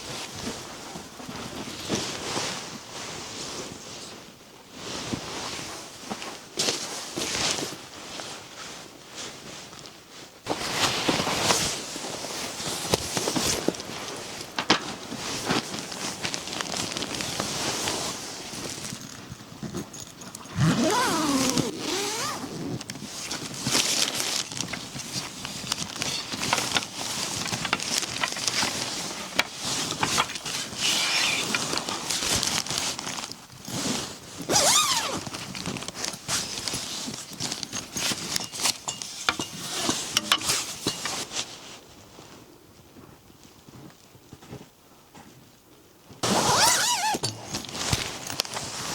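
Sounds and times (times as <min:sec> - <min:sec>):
rustling: 0:04.8 - 0:43.1, 0:46.2 - 0:48.9
squeaky scrape: 0:20.5 - 0:22.8, 0:46.2 - 0:48.0.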